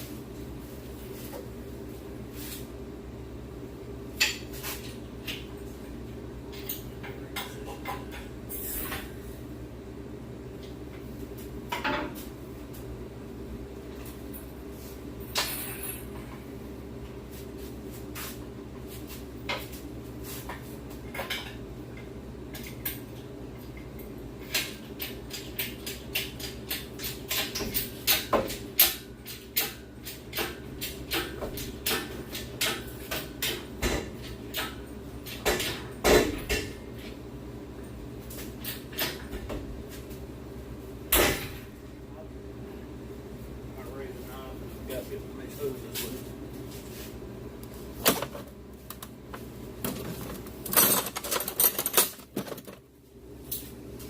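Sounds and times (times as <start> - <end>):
steady low hum: 0.0 - 54.0
engine hoist chain clanking: 50.6 - 52.8.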